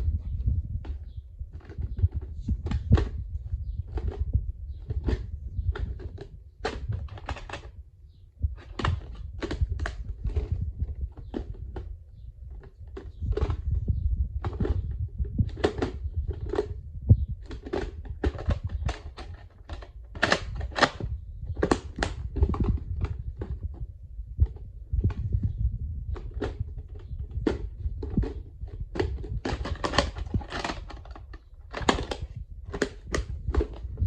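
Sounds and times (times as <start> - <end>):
plastic cases clicking and knocking: 0.0 - 7.8, 8.5 - 34.0.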